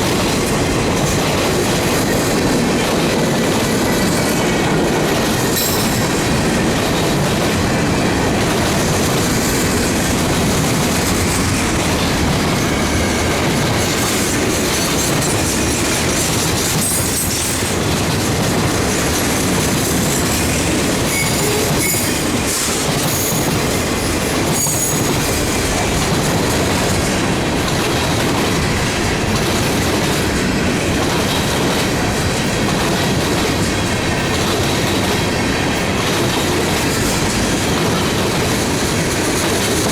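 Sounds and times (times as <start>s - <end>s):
train wheels clattering over rails: 0.0s - 39.9s
high-pitched wheel squeals: 21.1s - 22.2s, 24.5s - 25.2s.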